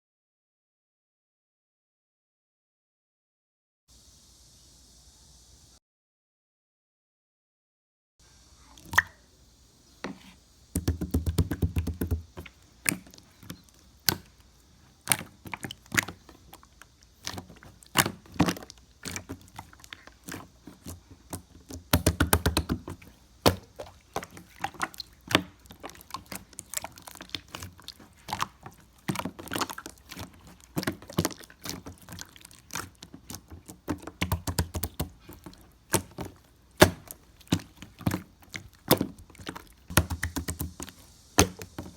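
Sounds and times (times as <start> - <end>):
knocks of hard objects: 10.8 - 13.1, 21.3 - 23.8.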